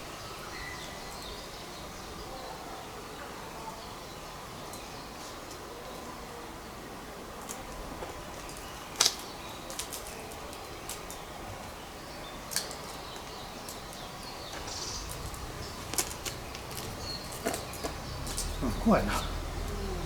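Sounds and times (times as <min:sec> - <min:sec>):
steady outdoor hiss: 0:00.0 - 0:20.0
hands and shoes tapping on rock: 0:14.5 - 0:19.3
low rumble: 0:14.6 - 0:20.0.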